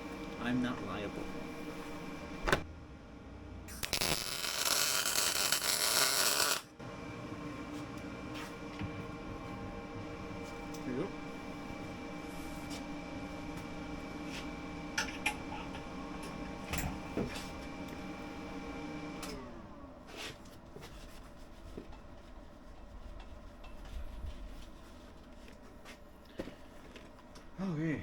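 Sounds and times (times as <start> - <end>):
electric tool motor running: 3.7 - 6.7.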